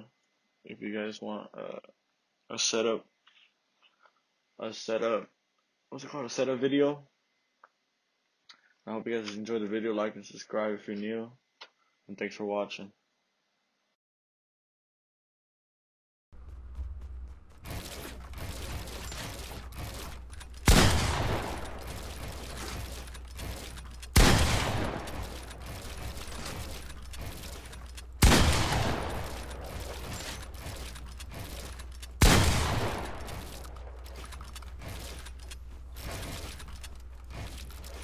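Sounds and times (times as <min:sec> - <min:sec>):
loud sudden blasts: 0:20.6 - 0:34.2.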